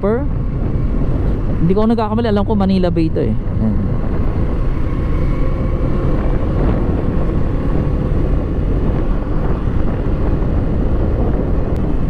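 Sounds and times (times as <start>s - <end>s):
motorcycle engine running: 0.0s - 12.0s
wind buffeting microphone: 0.0s - 12.0s.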